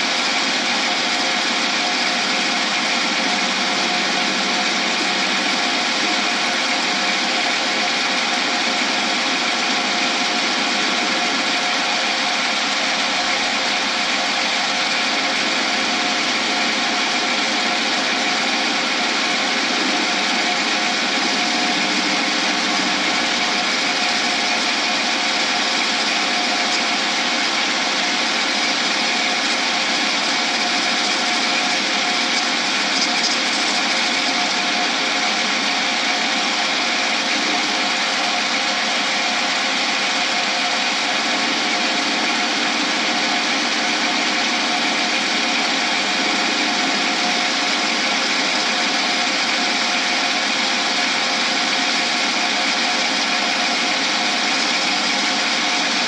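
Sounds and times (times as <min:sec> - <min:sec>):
cutting tool hissing: 0:00.0 - 0:56.0
lathe humming: 0:00.0 - 0:56.0.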